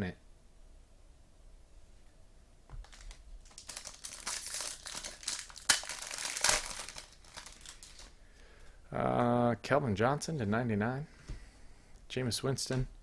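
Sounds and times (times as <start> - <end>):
plastic wrapper crinkling and tearing: 2.8 - 8.2.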